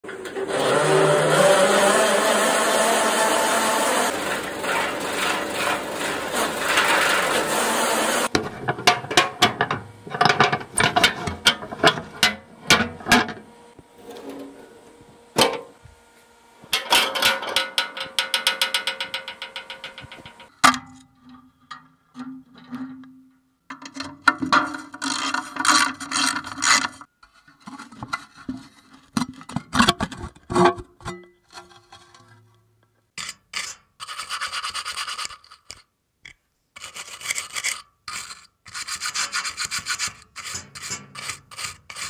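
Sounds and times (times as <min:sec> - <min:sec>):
forage cutter grinding: 0:00.1 - 0:13.2, 0:24.8 - 0:27.1.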